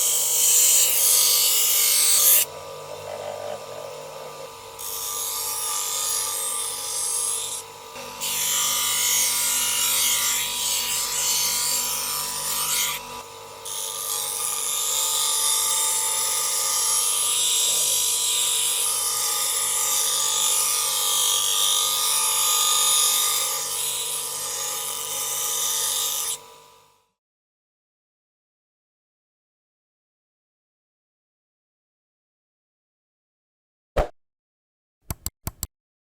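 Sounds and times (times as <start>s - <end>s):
angle grinder grinding metal: 0.0s - 26.4s.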